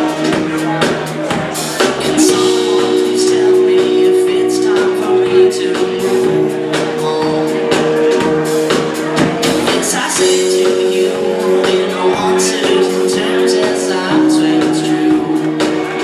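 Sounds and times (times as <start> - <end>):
drum and cymbal hits: 0.0 - 16.0
live band playing: 0.0 - 16.0.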